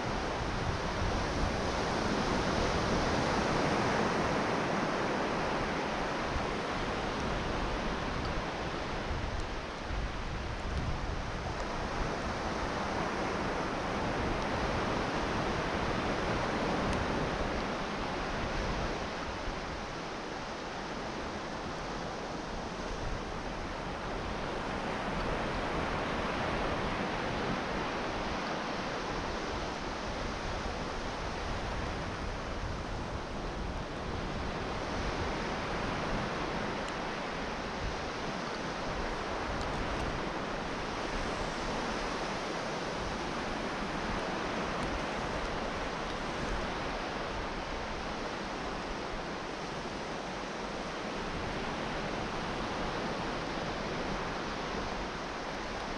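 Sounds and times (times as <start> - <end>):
surf breaking on a beach: 0.0 - 55.9
wind rumbling on microphone: 0.0 - 55.9.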